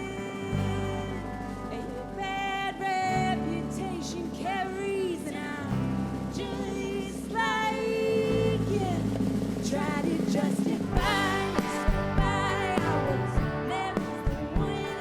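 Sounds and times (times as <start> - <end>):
held bass notes: 0.0 - 15.0
woman singing: 0.0 - 15.0
drum hits: 11.0 - 15.0.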